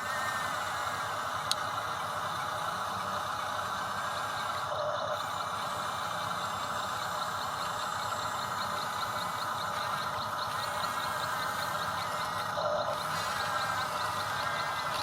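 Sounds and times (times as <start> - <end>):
small electric motors whining: 0.0 - 15.0
fast regular ticking: 1.4 - 15.0.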